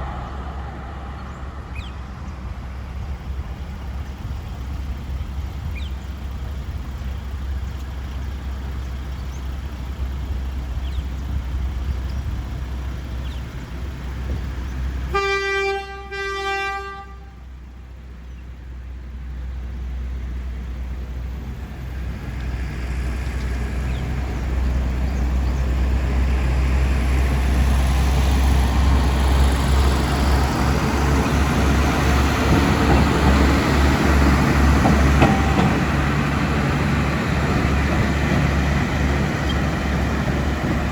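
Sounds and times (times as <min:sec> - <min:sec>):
locomotive and wagons rumbling: 0:00.0 - 0:40.9
train horn blasts: 0:15.1 - 0:17.5.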